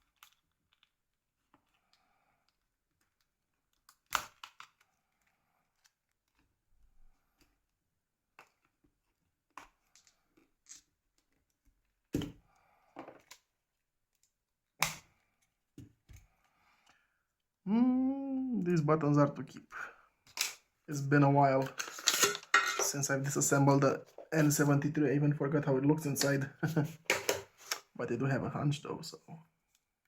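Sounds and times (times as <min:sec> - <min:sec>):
plastic phone parts clicking: 0:02.5 - 0:06.5.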